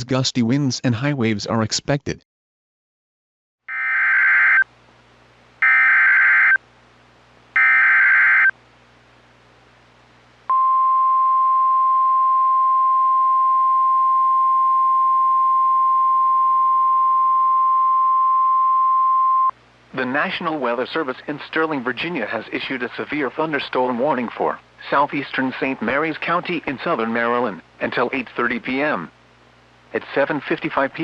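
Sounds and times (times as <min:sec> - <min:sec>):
steady warning alarm tone: 0:03.7 - 0:04.6, 0:05.6 - 0:06.6, 0:07.6 - 0:08.5
screeching digital data bursts: 0:07.6 - 0:08.5.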